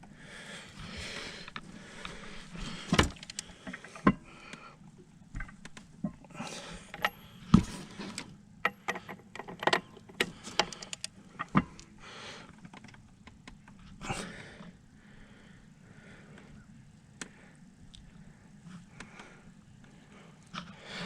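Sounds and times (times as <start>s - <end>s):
metal tools clinking and knocking: 6.9s - 7.3s, 8.6s - 11.0s.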